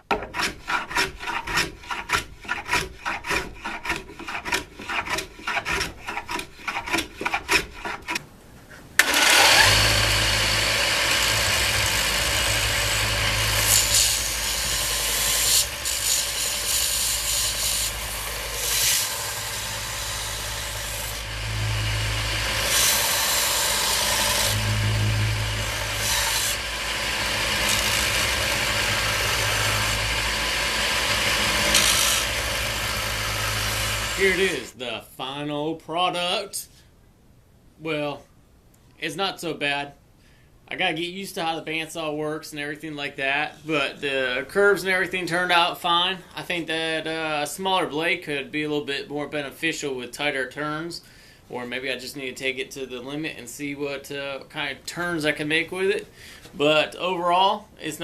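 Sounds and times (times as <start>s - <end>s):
hand rasp strokes on wood: 0.1s - 8.2s, 9.0s - 34.7s
bandsaw cutting wood: 9.0s - 34.8s.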